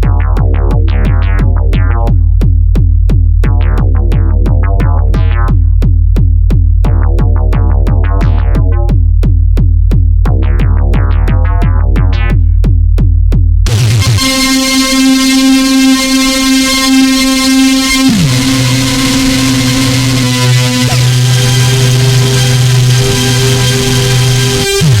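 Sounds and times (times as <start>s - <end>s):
deep bass: 0.0s - 25.0s
drum machine ticking: 0.0s - 25.0s
plucked synthesizer notes: 0.0s - 25.0s
sustained synthesizer chord: 13.7s - 25.0s.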